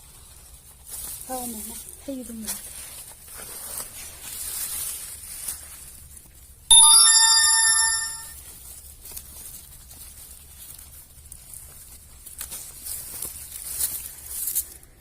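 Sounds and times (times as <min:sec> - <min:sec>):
electronic chime: 0:06.7 - 0:08.4.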